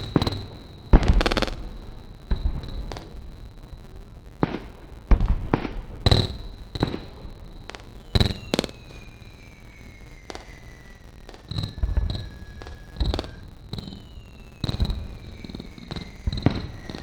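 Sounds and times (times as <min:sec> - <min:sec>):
fireworks cracking and popping: 0:00.0 - 0:17.0
faint falling whistle: 0:07.5 - 0:17.0
steady high thin tone: 0:09.1 - 0:17.0.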